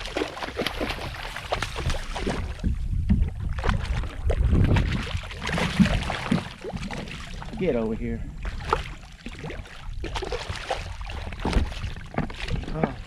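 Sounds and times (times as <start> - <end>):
water sounds: 0.0 - 13.0
wind rumbling on microphone: 0.0 - 13.0
short knocks on kayak: 11.4 - 13.0.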